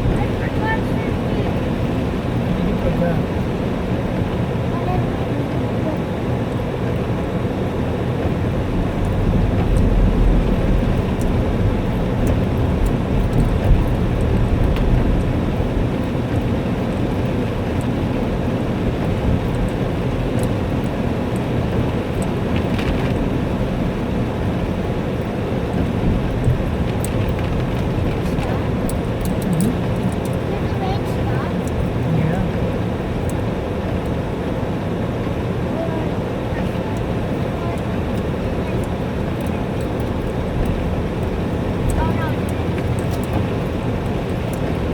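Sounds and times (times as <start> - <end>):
heavy rain pouring: 8.3 - 44.9
faint ticks: 26.4 - 30.5, 36.9 - 44.8.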